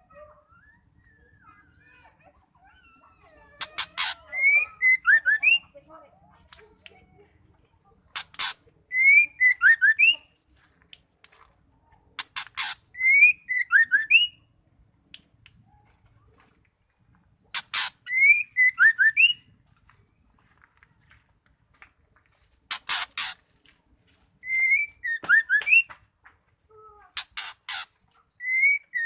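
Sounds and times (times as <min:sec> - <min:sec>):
bird calling with rasp and whistles: 0:00.1 - 0:05.8, 0:08.1 - 0:10.3, 0:12.2 - 0:14.4, 0:17.5 - 0:19.5, 0:22.7 - 0:23.5, 0:24.4 - 0:26.0, 0:27.1 - 0:29.0.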